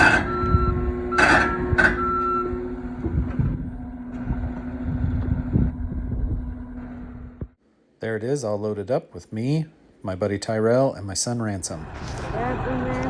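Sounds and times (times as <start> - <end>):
reversing alarm beeping: 0.0 - 2.8
skid loader engine running: 0.0 - 7.6, 11.8 - 13.0.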